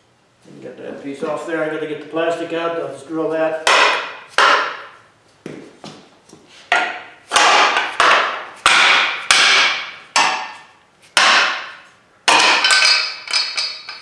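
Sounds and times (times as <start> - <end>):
hammer on aluminum ladder: 3.6 - 5.0, 6.7 - 14.0.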